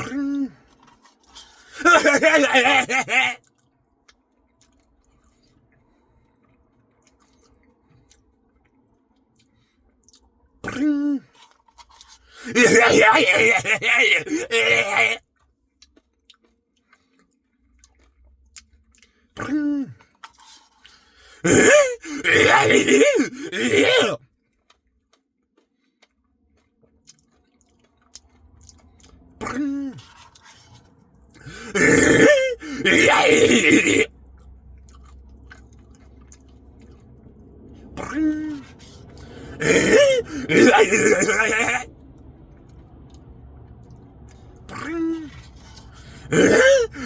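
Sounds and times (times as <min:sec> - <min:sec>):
loud exaggerated eating sounds: 0:00.0 - 0:03.5, 0:10.6 - 0:15.2, 0:19.4 - 0:24.2, 0:29.0 - 0:30.7, 0:31.3 - 0:34.2, 0:37.9 - 0:41.9, 0:44.6 - 0:47.0
chewing and wet mouth sounds: 0:00.0 - 0:12.6, 0:13.2 - 0:22.5, 0:23.2 - 0:41.2, 0:41.9 - 0:47.0.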